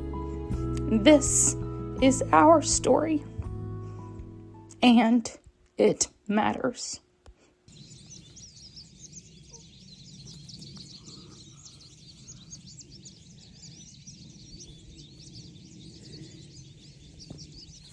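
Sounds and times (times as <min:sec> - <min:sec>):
low steady background hum: 0:04.3 - 0:13.7
many birds chirping: 0:07.7 - 0:17.9.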